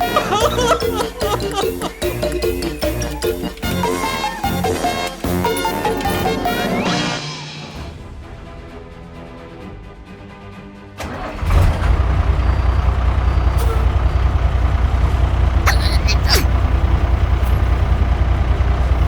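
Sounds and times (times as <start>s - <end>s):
background music: 0.0s - 11.3s
low vehicle engine rumble: 11.7s - 19.0s
short high squeals: 15.7s - 16.5s.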